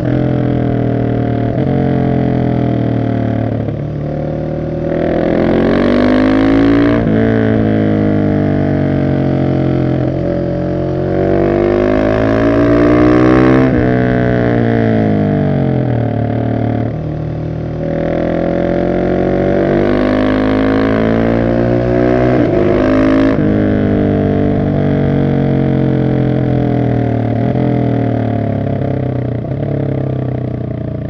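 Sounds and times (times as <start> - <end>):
motorcycle engine revving: 0.0 - 31.0.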